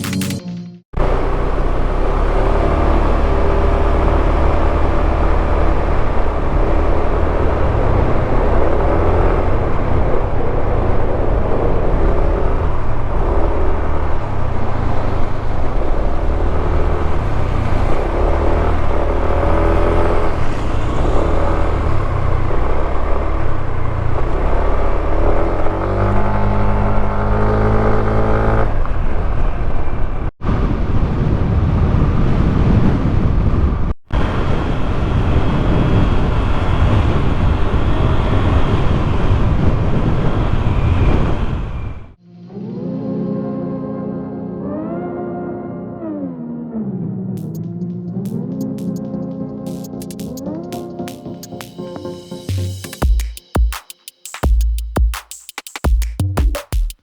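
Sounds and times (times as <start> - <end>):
scooter engine revving: 1.0 - 29.7, 47.4 - 51.7.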